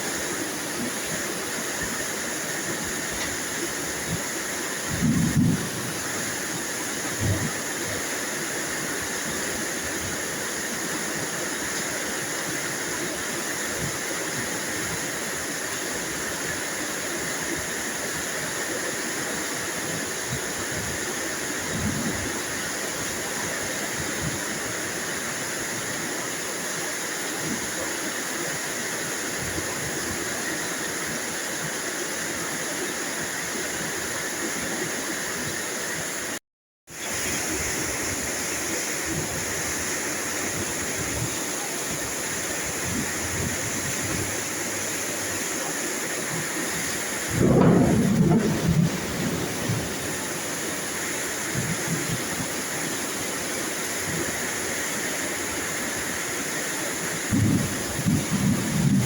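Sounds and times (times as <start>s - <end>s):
heavy rain: 0.0s - 59.0s.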